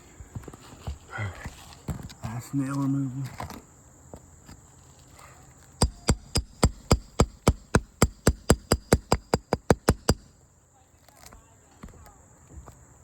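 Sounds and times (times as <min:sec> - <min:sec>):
hammer tapping nail puller: 0:05.8 - 0:10.3.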